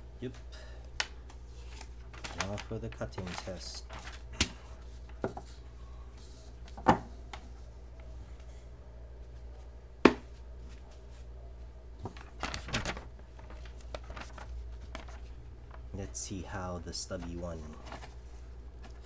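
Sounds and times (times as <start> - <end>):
low steady hum: 0.0 - 19.0
rustling: 12.0 - 16.0.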